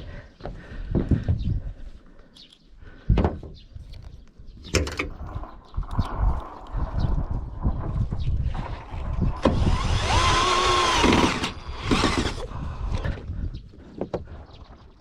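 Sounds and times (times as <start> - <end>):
power tool motor whining: 9.3 - 13.1.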